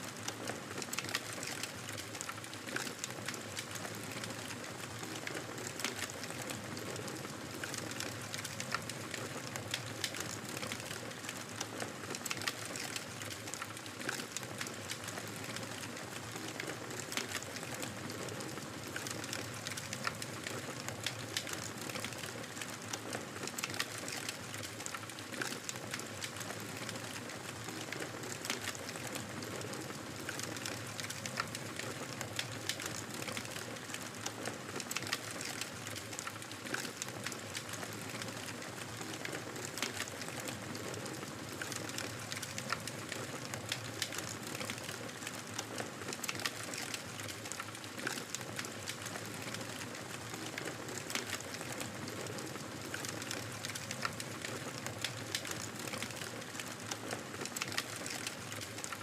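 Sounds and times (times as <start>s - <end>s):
fire crackling in a fireplace: 0.0s - 59.0s.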